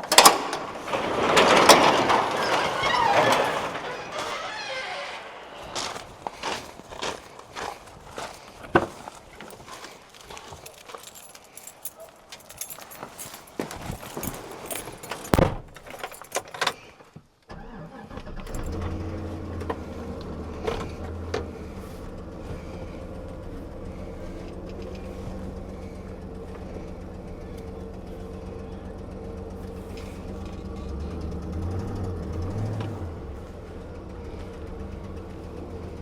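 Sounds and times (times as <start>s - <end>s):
truck engine starting and idling: 0.0s - 11.7s, 12.4s - 36.0s
keys jangling: 9.4s - 16.8s, 18.4s - 18.8s.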